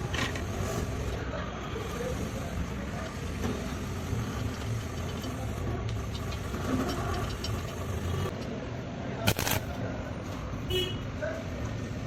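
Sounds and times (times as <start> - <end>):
welding arc crackling: 9.3 - 9.8.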